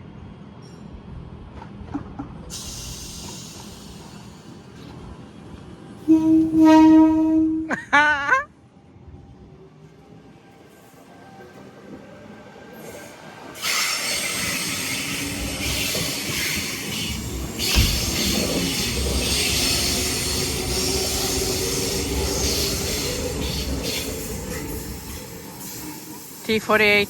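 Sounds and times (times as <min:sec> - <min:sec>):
electric train passing: 0:08.6 - 0:27.0
thump: 0:17.7 - 0:18.2.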